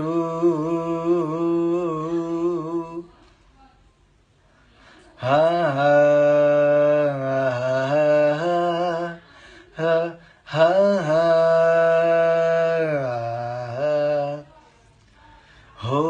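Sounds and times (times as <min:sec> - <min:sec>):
man singing unaccompanied: 0:00.0 - 0:03.1, 0:05.2 - 0:14.5, 0:15.8 - 0:16.0.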